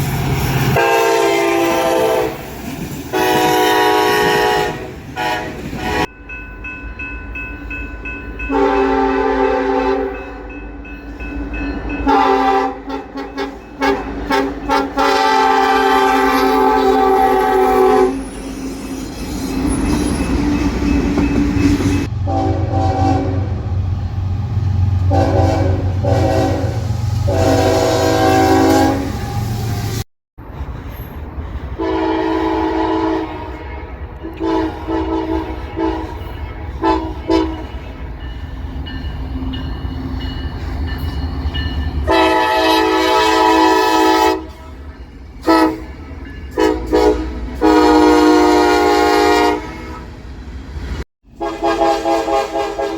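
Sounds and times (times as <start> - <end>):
train rumbling past: 0.0 - 52.9
locomotive air horn blasts: 0.8 - 2.5, 3.1 - 6.1, 8.5 - 10.5, 12.0 - 18.3, 22.1 - 23.6, 25.1 - 30.0, 31.8 - 37.9, 42.1 - 44.8, 45.4 - 46.0, 46.6 - 50.2, 51.3 - 52.9.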